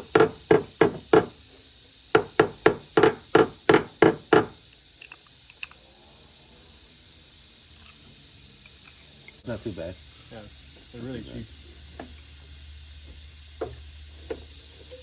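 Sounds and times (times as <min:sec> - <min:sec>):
hammer tapping on car body panel: 0:00.0 - 0:01.3, 0:02.2 - 0:04.6.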